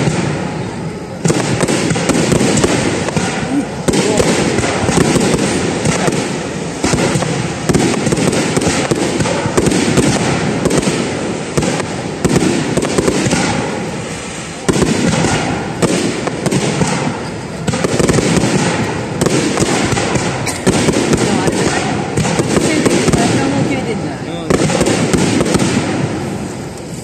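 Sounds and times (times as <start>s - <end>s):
aerial fireworks bursting: 0.0s - 27.0s
fireworks crackling: 0.0s - 27.0s.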